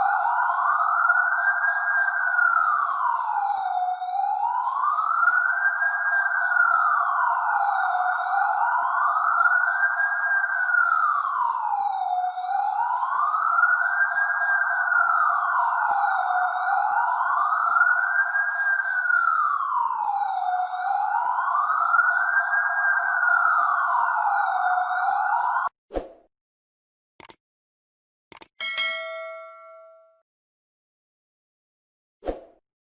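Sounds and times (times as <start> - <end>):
police siren wailing: 0.0 - 25.7.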